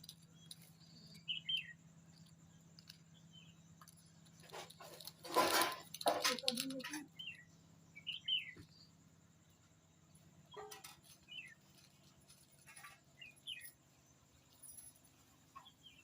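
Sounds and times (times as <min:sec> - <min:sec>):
rustling clicks: 0:03.8 - 0:07.1.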